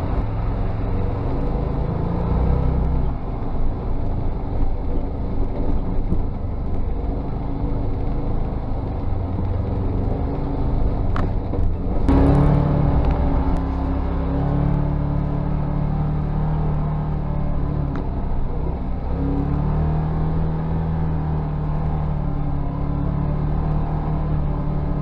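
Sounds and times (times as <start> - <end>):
utility vehicle engine rumble: 0.0 - 25.0.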